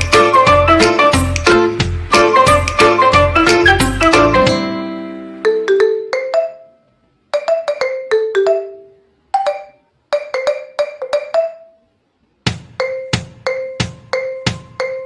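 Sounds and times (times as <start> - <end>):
mallet percussion melody: 0.0 - 11.9, 12.5 - 15.0.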